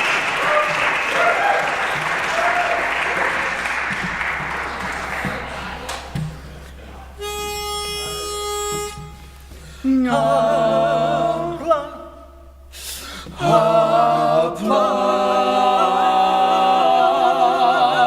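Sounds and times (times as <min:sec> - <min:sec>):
vocal quartet singing in harmony: 0:09.7 - 0:18.0.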